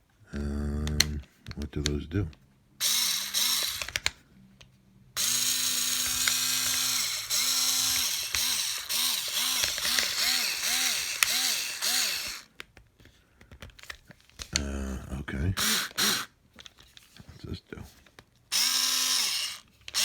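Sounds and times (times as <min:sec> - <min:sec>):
cordless screwdriver motor whirring: 0:02.8 - 0:04.1, 0:05.2 - 0:12.5, 0:15.6 - 0:16.3, 0:18.5 - 0:20.0.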